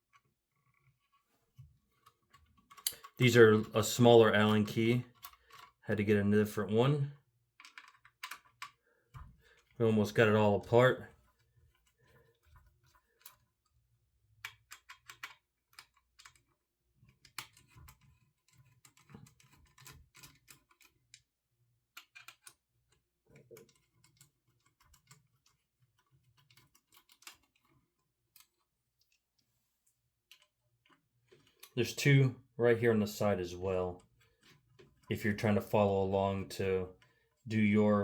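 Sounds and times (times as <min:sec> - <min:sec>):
allen key clicking on screws: 0:02.1 - 0:03.2, 0:07.6 - 0:08.8, 0:14.4 - 0:21.2, 0:22.0 - 0:28.6.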